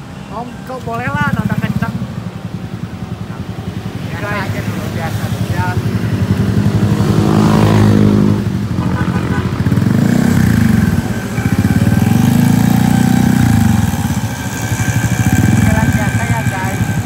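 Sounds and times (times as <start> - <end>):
scooter engine revving: 0.0 - 17.0.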